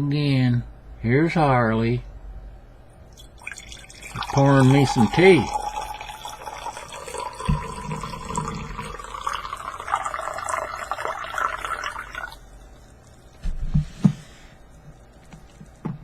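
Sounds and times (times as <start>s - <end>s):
tea pouring into a cup: 3.2s - 13.4s.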